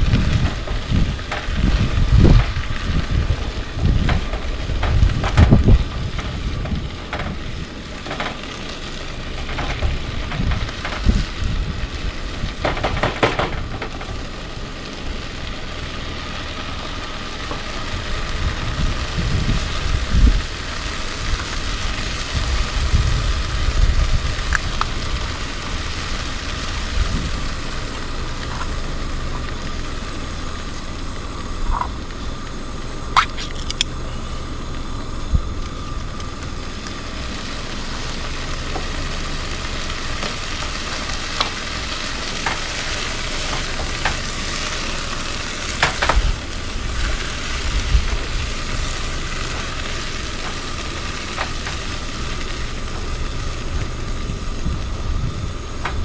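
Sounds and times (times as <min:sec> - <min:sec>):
food sizzling in a pot: 0:14.1 - 0:56.0.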